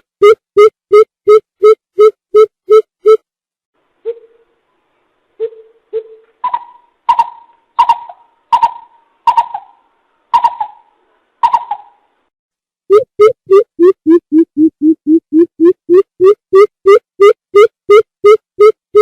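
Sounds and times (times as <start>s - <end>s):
bird hooting: 5.4s - 9.8s, 10.4s - 12.0s.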